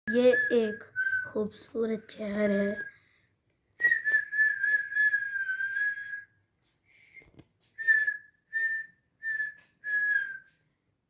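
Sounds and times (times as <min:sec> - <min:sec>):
person whistling: 0:00.1 - 0:01.4, 0:03.8 - 0:06.3, 0:07.2 - 0:10.6.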